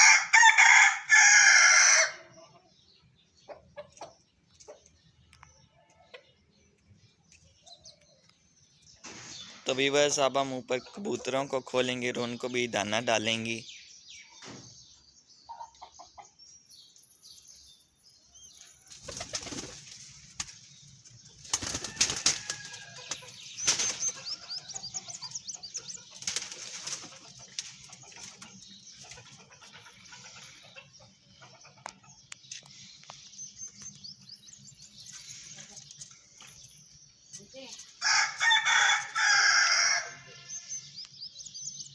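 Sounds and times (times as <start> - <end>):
high bird chirping: 12.1 - 19.7, 22.9 - 38.0
pigeon wings flapping: 19.0 - 20.6, 21.5 - 22.7.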